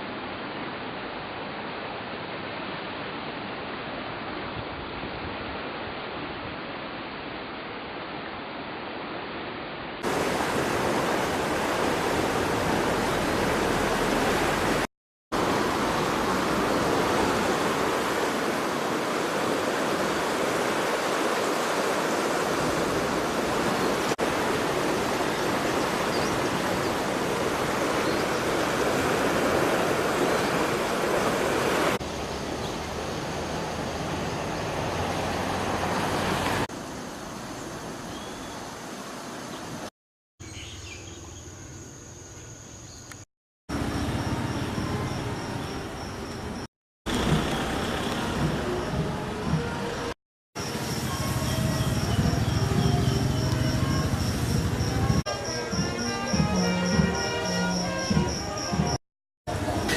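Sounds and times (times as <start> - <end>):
floodwater rushing through gates: 10.0 - 36.7, 47.1 - 57.7.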